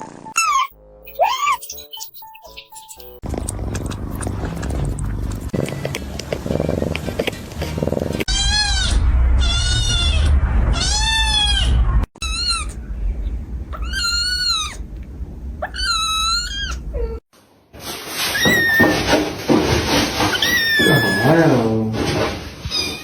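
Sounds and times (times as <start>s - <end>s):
kittens mewing: 3.3s - 14.8s, 15.6s - 17.2s, 20.3s - 21.4s.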